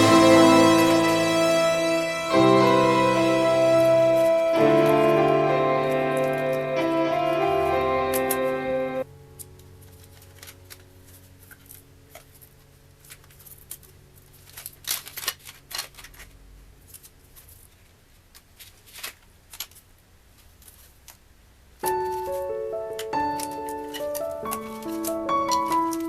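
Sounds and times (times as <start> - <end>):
music: 0.0 - 11.2, 21.9 - 26.0.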